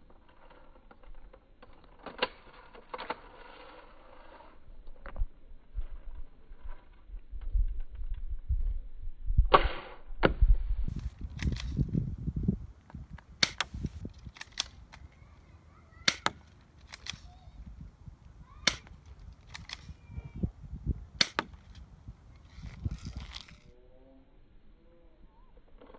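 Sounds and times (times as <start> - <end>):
airsoft gun shots: 13.4 - 14.7, 16.0 - 17.3, 18.6 - 19.9, 21.2 - 21.8.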